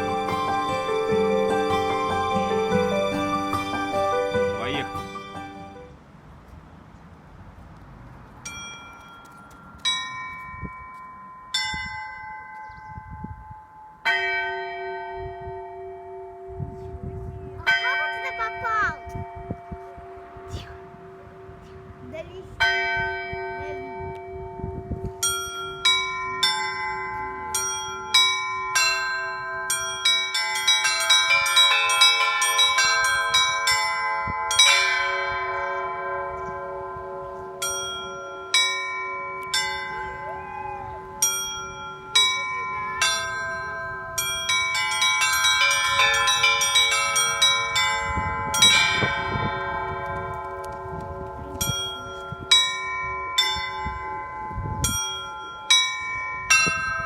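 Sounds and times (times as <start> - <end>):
deep bell humming: 0.0 - 5.9, 22.6 - 57.0
middle bells beating: 0.0 - 5.9, 17.6 - 57.0
small treble bells ringing: 0.0 - 5.9, 8.4 - 21.9, 22.6 - 57.0.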